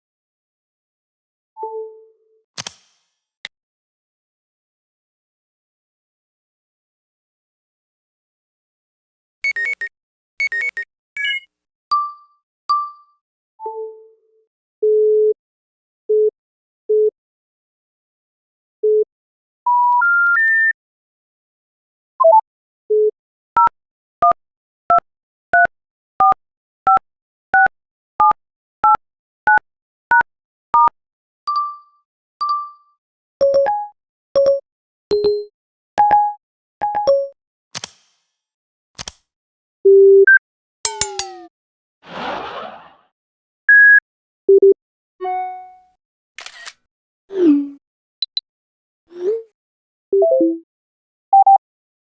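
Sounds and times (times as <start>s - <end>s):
electronic phone tones: 9.4s - 11.5s
two-pitch keypad beeps: 9.4s - 11.5s, 48.2s - 48.4s.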